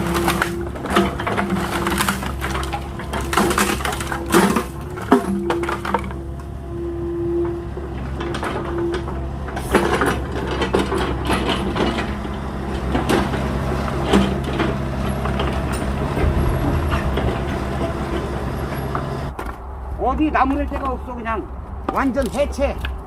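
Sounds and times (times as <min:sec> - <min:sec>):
wood cracking and splintering: 0:00.0 - 0:06.2
excavator engine running: 0:00.0 - 0:19.4.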